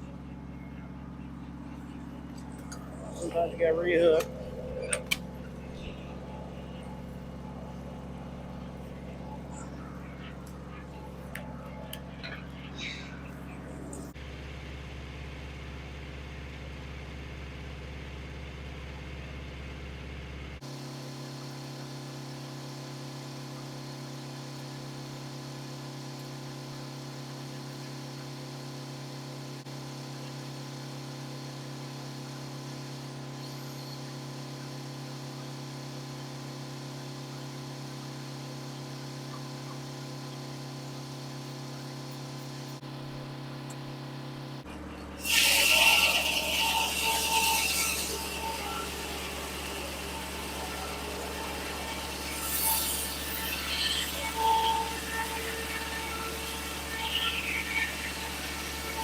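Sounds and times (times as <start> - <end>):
sawmill engine humming: 0.0 - 59.0.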